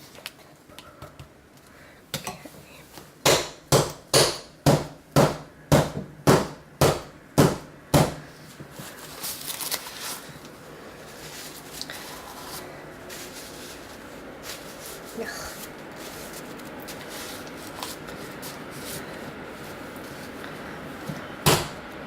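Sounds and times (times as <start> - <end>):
handling rustle: 8.4 - 21.2.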